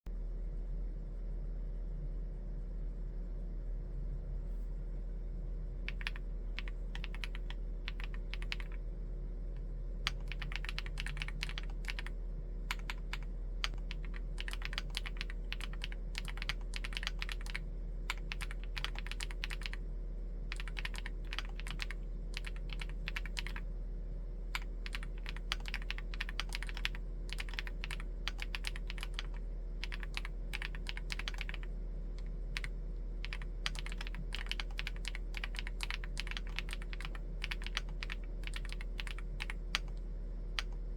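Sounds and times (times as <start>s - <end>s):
low steady hum: 0.1s - 40.9s
mechanical keyboard typing: 5.9s - 8.8s, 10.0s - 12.1s, 12.7s - 19.8s, 20.5s - 23.6s, 24.5s - 40.0s.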